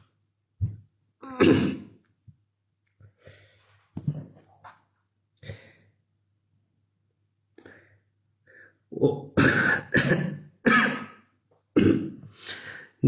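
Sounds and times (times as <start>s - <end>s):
throat sounds: 0.6s - 1.9s.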